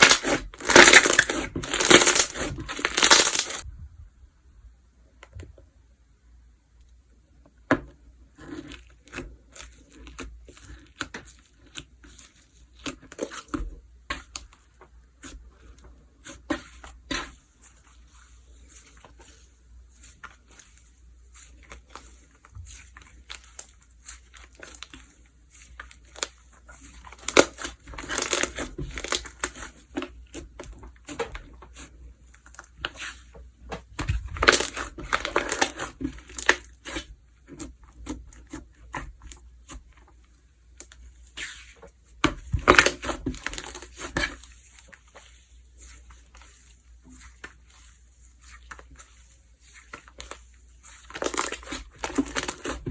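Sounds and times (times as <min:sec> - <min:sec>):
slime clicking and crackling: 0:00.0 - 0:03.6, 0:25.6 - 0:31.3, 0:34.0 - 0:39.8, 0:48.4 - 0:52.9.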